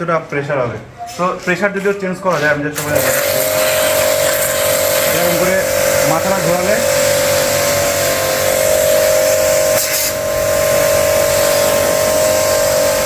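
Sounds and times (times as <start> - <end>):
high-pressure water jet hissing: 2.8 - 13.0
pump motor whine: 2.8 - 13.0.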